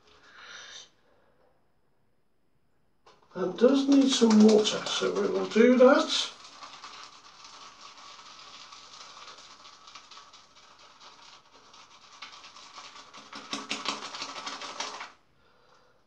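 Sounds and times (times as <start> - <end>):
shaving brush whipping lather: 3.4 - 15.0.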